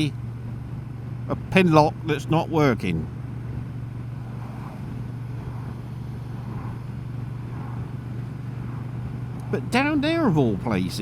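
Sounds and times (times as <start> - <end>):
motorcycle engine running steadily: 0.0 - 11.0.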